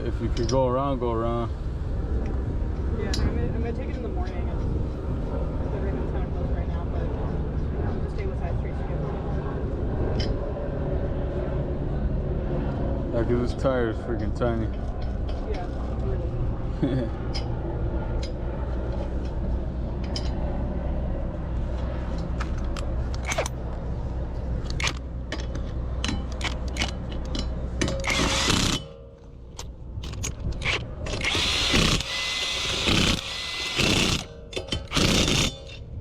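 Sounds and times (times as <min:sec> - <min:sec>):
steady low hum: 0:00.0 - 0:36.0
hand tools clicking and ratcheting: 0:22.6 - 0:23.6, 0:24.7 - 0:35.9
power tool bursts: 0:28.0 - 0:28.9, 0:31.1 - 0:35.7.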